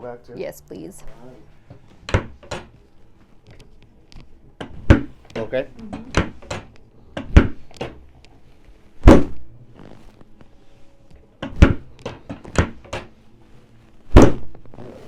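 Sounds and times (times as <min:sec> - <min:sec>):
back adjustment thuds and cracks: 0:01.7 - 0:08.3, 0:09.0 - 0:10.5, 0:11.1 - 0:13.2, 0:14.0 - 0:15.0.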